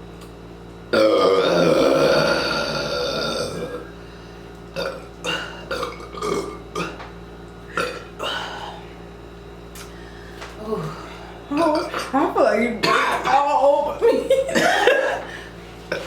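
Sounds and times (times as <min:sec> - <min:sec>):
long loud burp: 0:00.9 - 0:03.9, 0:04.8 - 0:07.0, 0:07.7 - 0:08.4.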